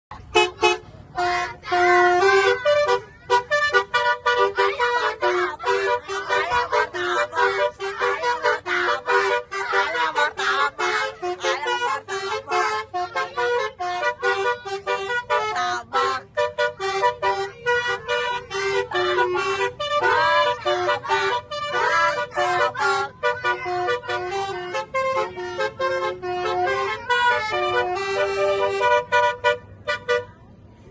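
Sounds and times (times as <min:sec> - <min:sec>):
multi-tone bus horn melody: 0:00.1 - 0:30.9.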